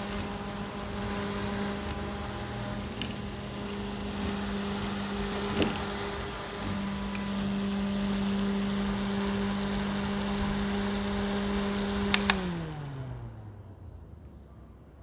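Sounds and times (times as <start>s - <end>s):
desk fan motor humming: 0.0s - 13.7s
fan switch clicks: 10.8s - 12.8s.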